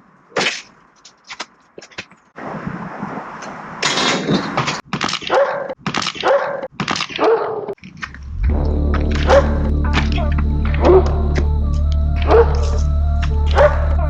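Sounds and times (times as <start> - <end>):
dog barking: 5.3 - 7.8, 9.3 - 9.6, 12.2 - 12.7, 13.5 - 14.0.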